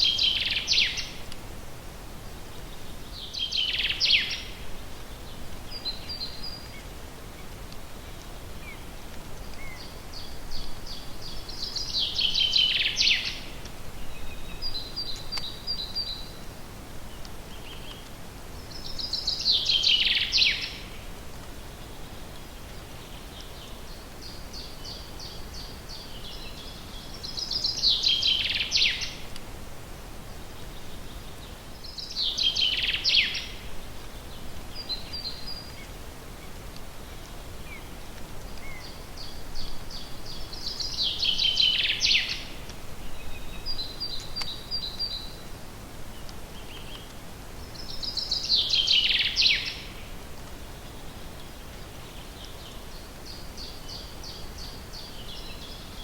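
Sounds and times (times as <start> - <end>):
soft background hiss: 0.0 - 56.0.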